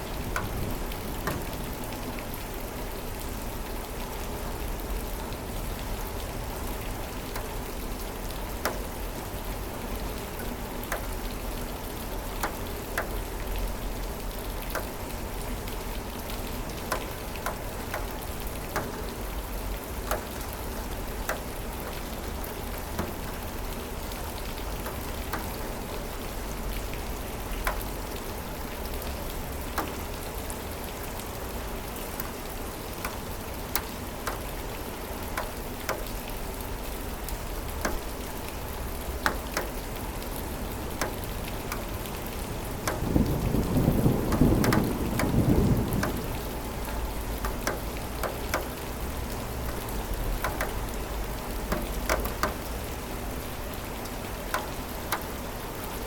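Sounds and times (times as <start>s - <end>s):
raindrops ticking: 0.0s - 56.0s
steady rain: 0.0s - 56.0s
thunder rumbling: 42.6s - 47.4s.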